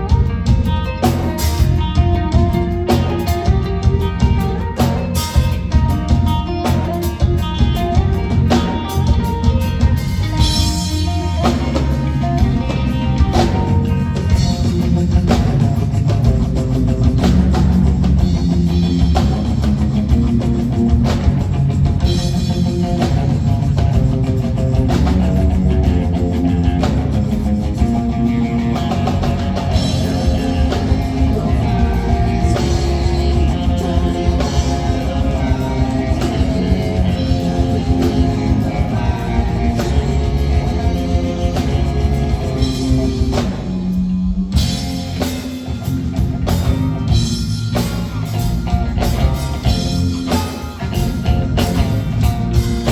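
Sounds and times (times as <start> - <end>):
live rock band playing: 0.0 - 52.9.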